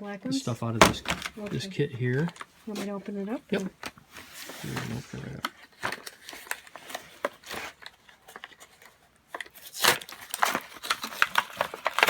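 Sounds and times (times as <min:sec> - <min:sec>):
packaging crinkling and tearing: 0:03.5 - 0:12.0.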